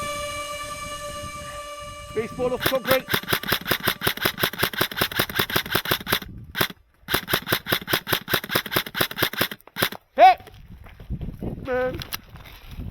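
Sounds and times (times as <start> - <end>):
airsoft gun firing: 2.6 - 10.0.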